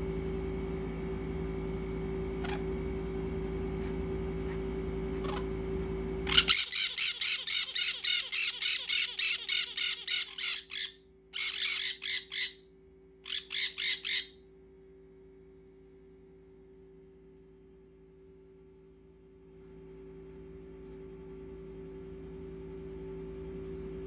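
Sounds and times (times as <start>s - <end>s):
steady low hum: 0.0s - 24.0s
bird squawking: 4.4s - 5.6s, 6.3s - 12.6s, 13.3s - 14.4s.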